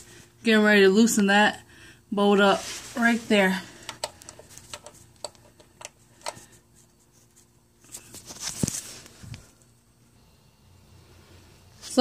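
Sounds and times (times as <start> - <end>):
scuffling noise: 2.4 - 3.5, 6.7 - 9.5.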